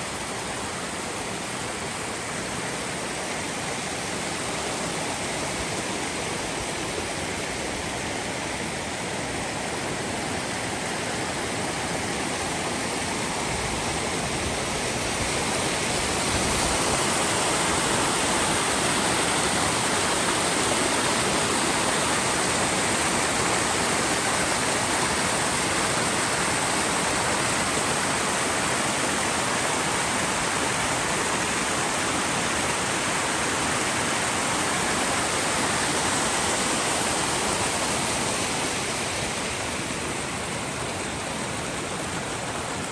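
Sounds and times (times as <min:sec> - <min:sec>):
flowing water rushing: 0:00.0 - 0:42.9.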